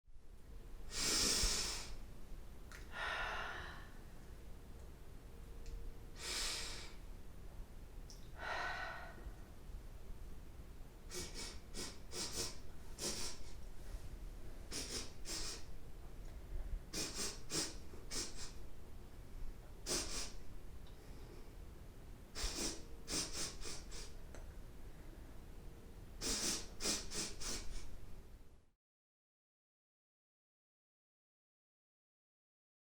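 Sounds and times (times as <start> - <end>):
person sniffing: 0.9 - 2.0, 6.2 - 7.0, 11.1 - 14.1, 14.7 - 15.7, 16.9 - 18.6, 19.8 - 20.4, 22.4 - 24.2, 26.2 - 27.9.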